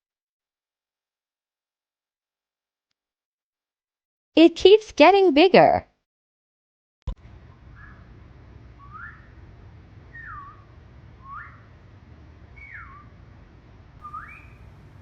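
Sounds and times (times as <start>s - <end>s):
low steady hum: 7.2s - 15.0s.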